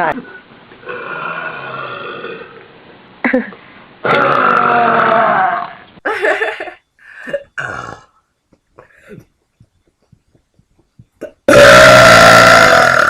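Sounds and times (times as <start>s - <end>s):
person burping loudly: 0.8s - 2.7s, 4.0s - 5.8s, 7.3s - 8.2s, 11.2s - 13.0s.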